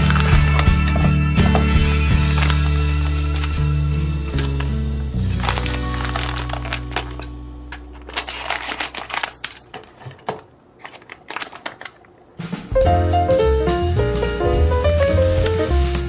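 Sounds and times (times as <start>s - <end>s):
background music: 0.0s - 9.2s, 12.5s - 16.0s
sharp clicks and crackles: 5.4s - 12.1s.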